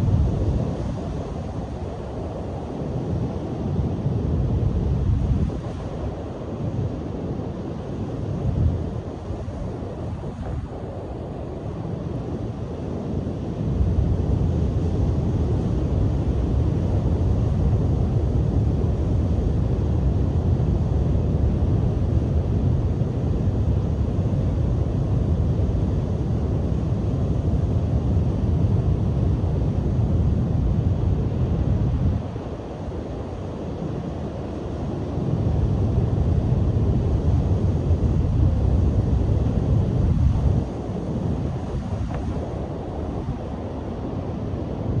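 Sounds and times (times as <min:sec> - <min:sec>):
wind buffeting microphone: 0:34.4 - 0:45.0.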